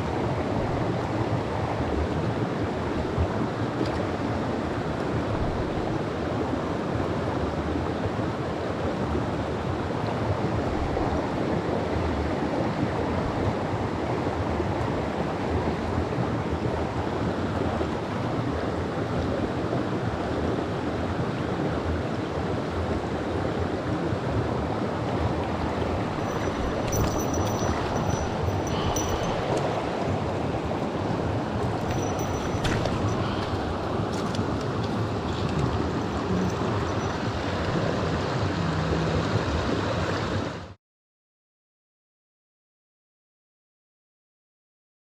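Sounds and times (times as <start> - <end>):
water rushing over rocks: 22.4 - 40.7.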